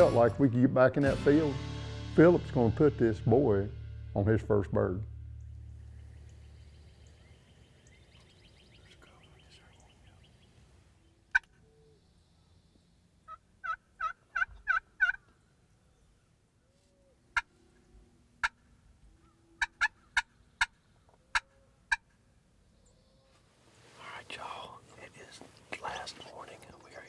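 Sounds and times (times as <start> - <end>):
turkey clucks: 13.3 - 15.3, 19.6 - 22.2
turkey yelps: 13.3 - 15.3, 19.2 - 22.2.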